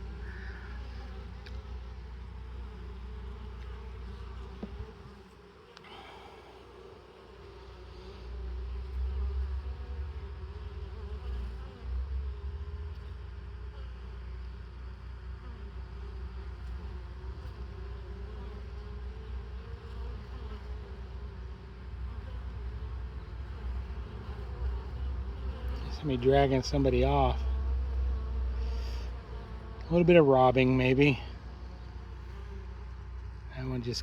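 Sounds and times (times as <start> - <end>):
honeybees buzzing: 0.0 - 34.0.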